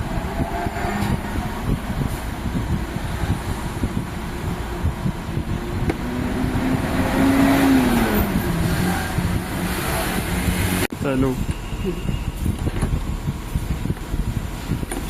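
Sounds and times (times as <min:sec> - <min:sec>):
vehicle passing by: 0:00.0 - 0:10.9
background rumble: 0:00.0 - 0:11.6.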